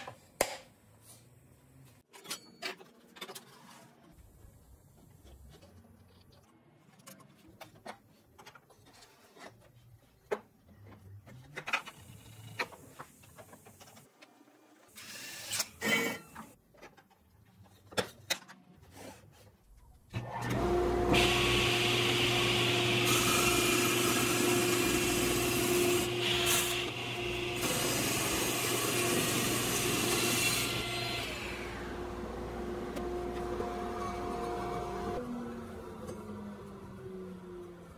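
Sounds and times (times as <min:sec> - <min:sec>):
table saw running: 0:20.2 - 0:36.2.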